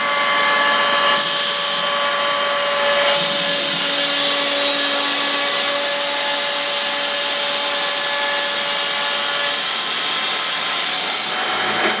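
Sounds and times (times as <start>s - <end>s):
machine whirring and hissing: 0.0s - 12.0s
spindle whine: 1.8s - 9.7s.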